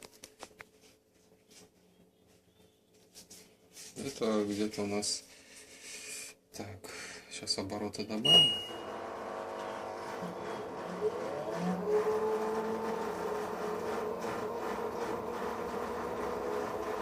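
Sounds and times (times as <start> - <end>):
washing machine drum spinning: 8.3 - 17.0.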